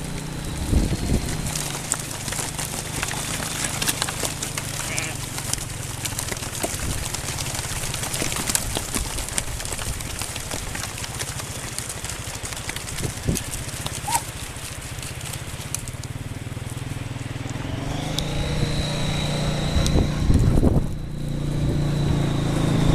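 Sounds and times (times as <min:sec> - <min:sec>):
quad bike engine running: 0:00.0 - 0:22.9
thin high whine: 0:18.0 - 0:22.9.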